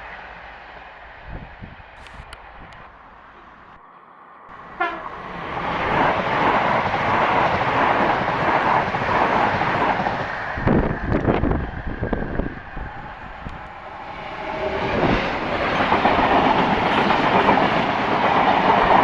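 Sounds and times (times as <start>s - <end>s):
train passing on rails: 0.0s - 19.0s
train horn blast: 4.6s - 5.2s
train wheels knocking: 5.8s - 11.6s, 14.3s - 19.0s.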